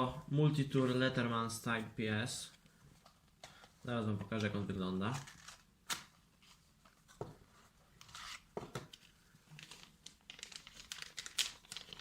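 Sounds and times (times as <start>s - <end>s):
packaging crinkling and tearing: 9.5s - 12.0s.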